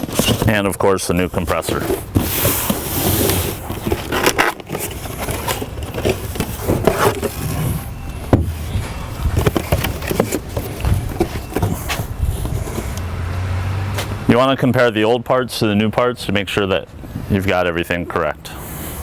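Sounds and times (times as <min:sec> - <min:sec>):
parts knocking and scraping: 0:00.0 - 0:13.1.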